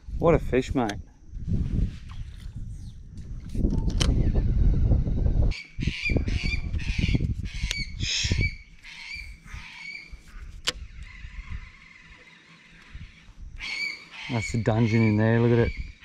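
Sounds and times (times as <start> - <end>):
low rumble on microphone: 0.0 - 12.1.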